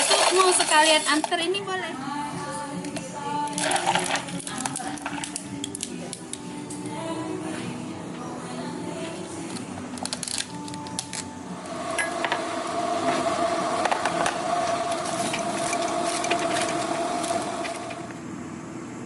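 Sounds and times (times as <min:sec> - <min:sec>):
kitchen appliance motor humming: 0:11.6 - 0:18.2.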